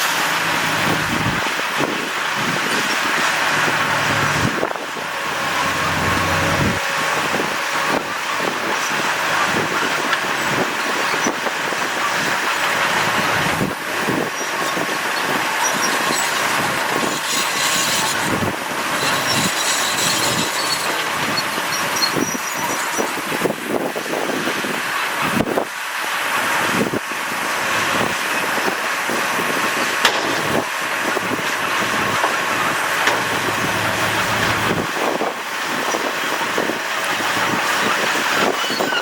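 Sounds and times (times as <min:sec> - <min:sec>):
low engine hum: 0:00.0 - 0:38.8
bulldozer diesel engine: 0:00.0 - 0:39.0
metallic grinding and clanks: 0:00.8 - 0:11.4, 0:14.4 - 0:23.2, 0:31.7 - 0:39.0.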